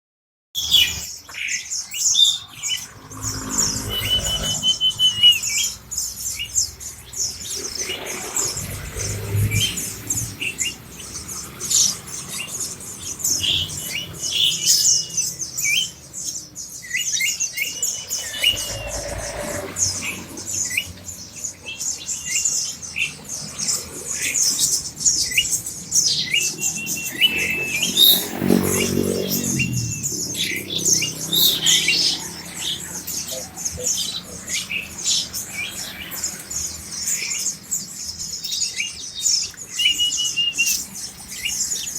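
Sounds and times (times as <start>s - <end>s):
bird trilling: 0.6s - 23.2s, 24.2s - 36.3s
birds chirping: 0.6s - 41.9s.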